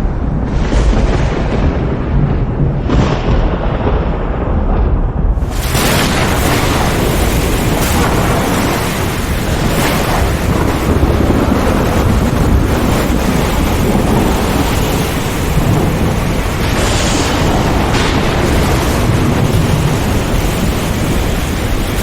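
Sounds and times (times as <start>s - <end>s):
rolling thunder: 0.0s - 22.0s
heavy rain hissing: 5.4s - 22.0s.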